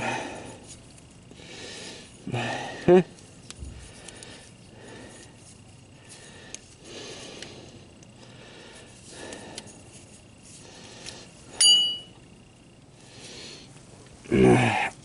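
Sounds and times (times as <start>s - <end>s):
metallic clink: 11.6s - 12.2s.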